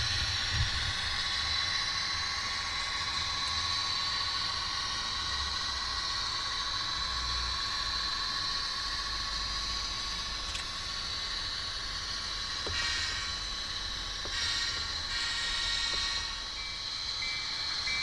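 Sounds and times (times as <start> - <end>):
high steady whine: 0.0 - 18.0
model locomotive diesel sound: 0.0 - 18.0.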